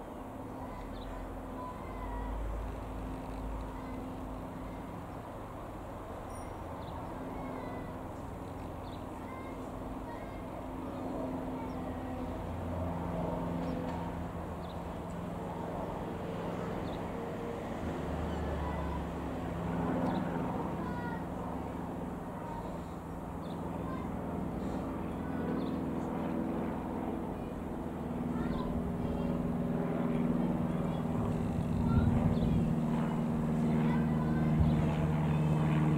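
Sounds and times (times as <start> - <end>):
light aeroplane engine droning: 0.0 - 35.9.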